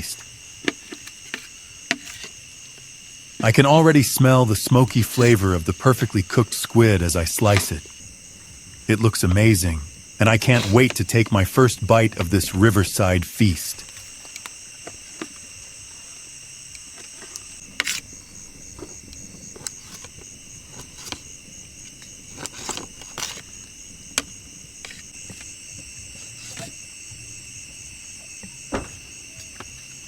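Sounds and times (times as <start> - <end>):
crickets chirring: 0.0 - 30.0
light knocks and clicks: 28.4 - 29.8.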